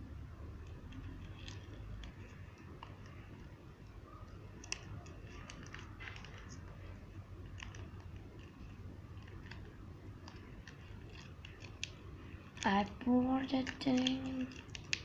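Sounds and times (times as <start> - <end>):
low steady hum: 0.0 - 15.0
plastic sachet clicks and crinkles: 7.4 - 15.0.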